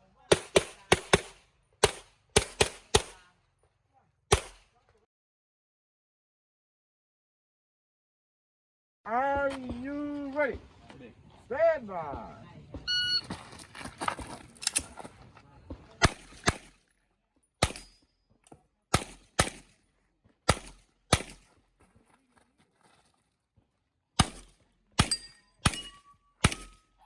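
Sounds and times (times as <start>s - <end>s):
handgun shots echoing: 0.3s - 3.2s, 4.3s - 4.7s, 17.6s - 18.0s, 24.2s - 26.9s.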